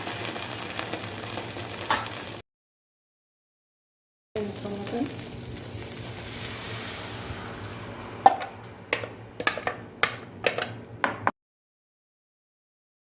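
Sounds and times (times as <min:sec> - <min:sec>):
onion and garlic sizzling in oil: 0:00.0 - 0:02.4, 0:04.4 - 0:10.6.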